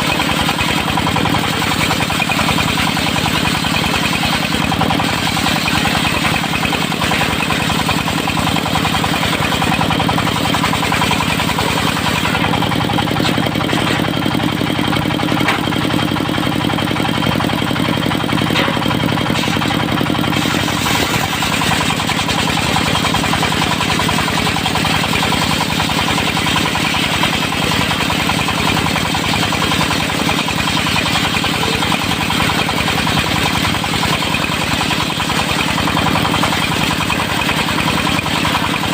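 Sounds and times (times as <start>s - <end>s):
diesel engine knocking: 0.0s - 38.9s.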